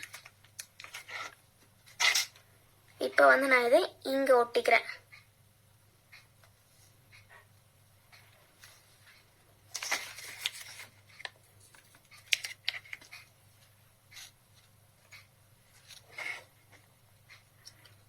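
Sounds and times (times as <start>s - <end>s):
paper sticker peeling and rustling: 9.7s - 13.2s.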